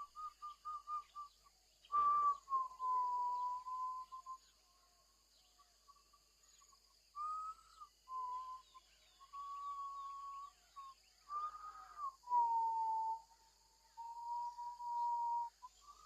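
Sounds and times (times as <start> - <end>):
person whistling: 1.9 - 4.4, 7.2 - 8.7, 14.0 - 16.0.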